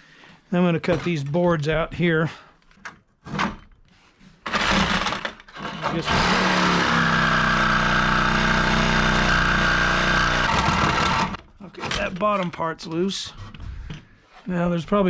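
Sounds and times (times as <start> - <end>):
electric power saw cutting: 4.5 - 11.4.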